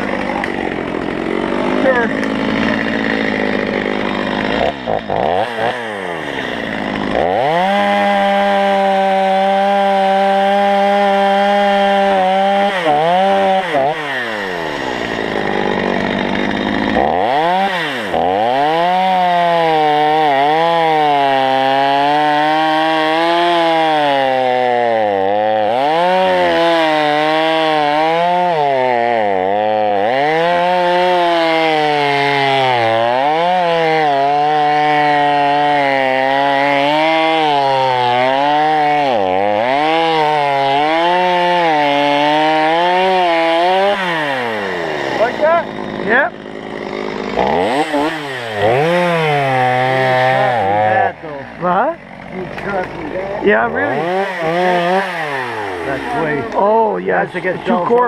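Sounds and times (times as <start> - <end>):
chainsaw cutting wood: 0.0 - 58.0
chainsaw engine revving: 0.0 - 58.0.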